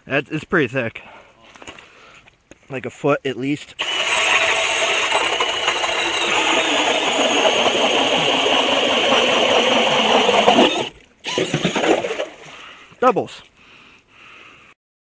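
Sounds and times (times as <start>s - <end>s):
drill boring through ice: 3.8s - 12.2s.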